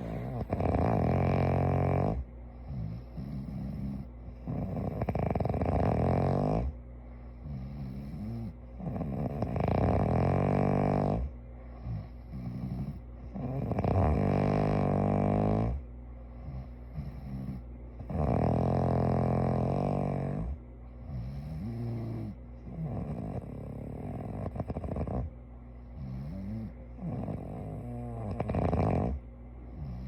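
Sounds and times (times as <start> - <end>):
person snoring: 0.0 - 2.2
quiet breaths: 0.0 - 30.0.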